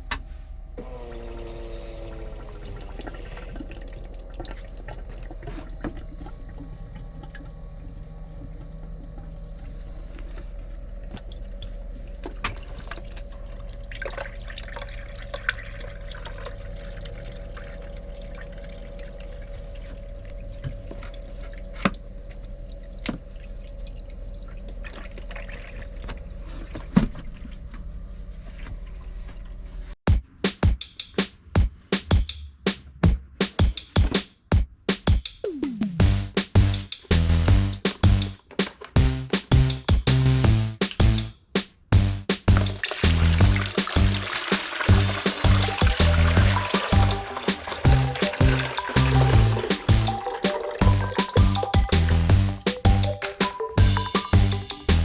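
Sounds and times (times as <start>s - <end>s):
water trickling into container: 10.7s - 20.0s, 23.4s - 26.4s, 42.7s - 51.9s
low hum: 41.9s - 44.3s.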